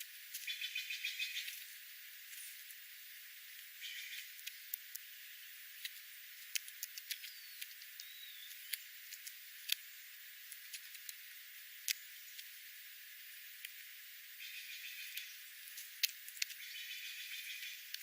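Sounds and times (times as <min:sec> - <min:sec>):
faint hiss: 0:00.0 - 0:18.0
bird chirps: 0:00.4 - 0:01.6, 0:03.8 - 0:04.6, 0:07.1 - 0:08.9, 0:14.4 - 0:15.4, 0:16.4 - 0:18.0.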